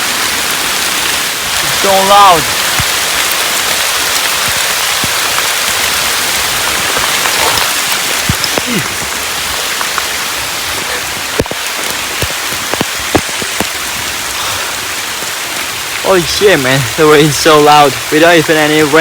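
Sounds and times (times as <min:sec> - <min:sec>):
heavy rain pouring: 0:00.0 - 0:19.0
raindrops striking close by: 0:00.0 - 0:19.0.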